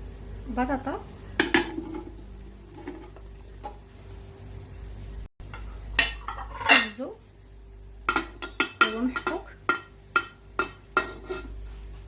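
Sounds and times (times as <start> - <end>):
utensils clinking against a pot: 5.5 - 7.1, 8.1 - 11.6.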